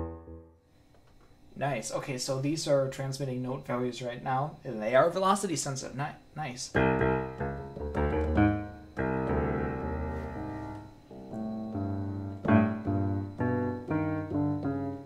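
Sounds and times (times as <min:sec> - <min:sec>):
piano chords: 0:00.0 - 0:00.6, 0:06.8 - 0:15.0.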